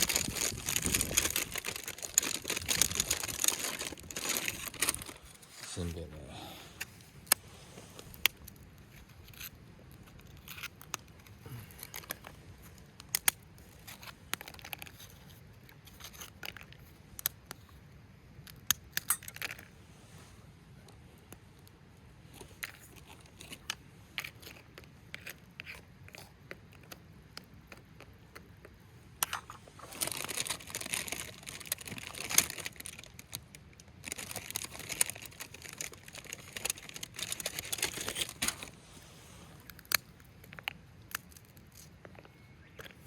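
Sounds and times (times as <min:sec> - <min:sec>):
plastic packaging crinkling: 0:00.0 - 0:05.8, 0:08.0 - 0:16.9, 0:22.3 - 0:27.0, 0:29.2 - 0:39.0.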